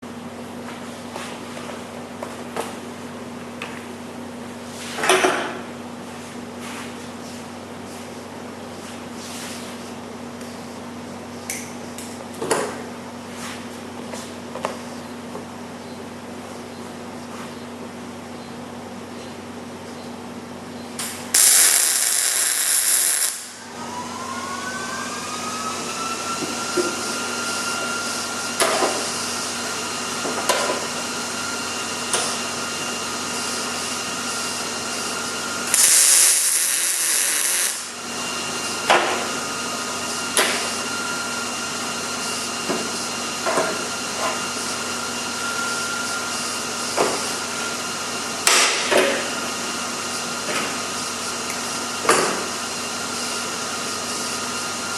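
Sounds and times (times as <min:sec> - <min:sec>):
welder hum and whine: 0:00.0 - 0:54.9
welding arc crackle: 0:21.0 - 0:23.7, 0:35.6 - 0:38.0.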